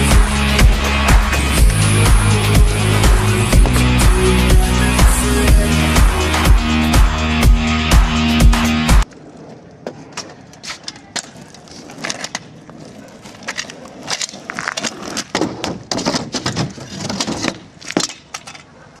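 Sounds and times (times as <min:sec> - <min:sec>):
bike clicks and knocks: 0:09.8 - 0:18.8.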